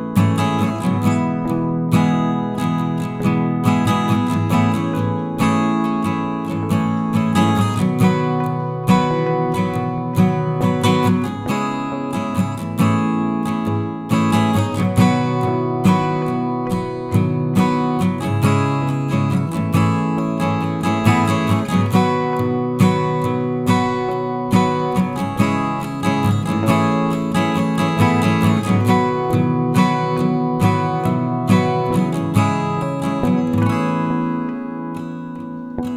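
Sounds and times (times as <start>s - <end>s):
strummed acoustic guitar music: 0.0s - 35.9s.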